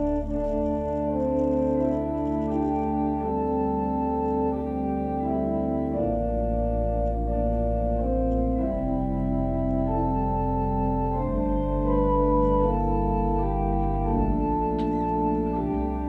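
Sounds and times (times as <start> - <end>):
organ playing slow chords: 0.0 - 16.0.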